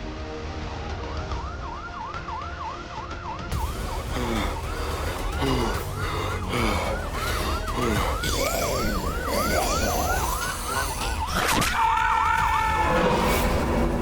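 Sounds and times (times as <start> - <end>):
siren yelping: 1.3 - 13.9
steady tone: 3.5 - 11.6
low rumble: 3.6 - 11.4.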